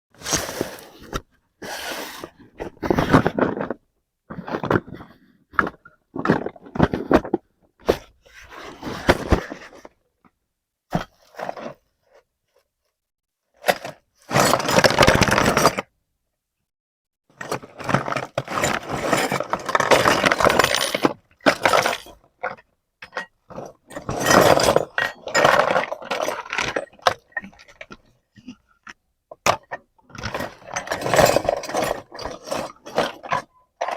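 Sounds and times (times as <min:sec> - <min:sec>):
plastic pieces clinking and scraping: 0:13.7 - 0:15.9, 0:17.4 - 0:28.0, 0:29.3 - 0:33.9.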